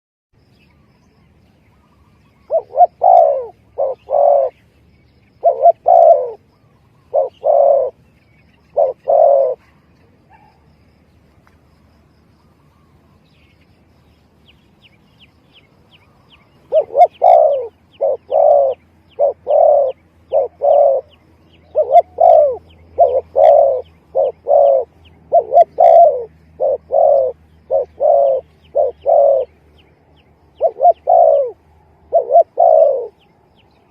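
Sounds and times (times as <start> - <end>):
dove cooing: 1.8 - 4.7, 5.3 - 8.0, 8.6 - 10.7, 16.0 - 33.9.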